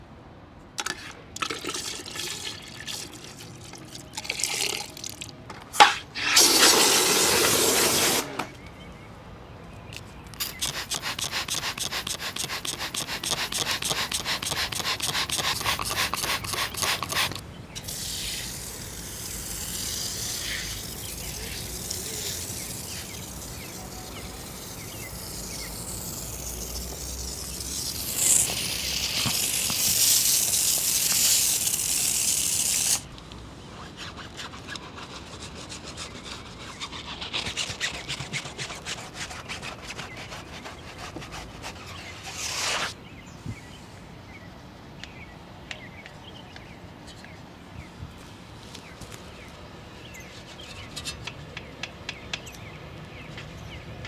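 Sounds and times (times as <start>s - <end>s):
steady spray hiss: 5.8s - 8.4s, 10.4s - 33.2s
water spraying and splashing: 6.2s - 8.3s, 10.4s - 33.1s.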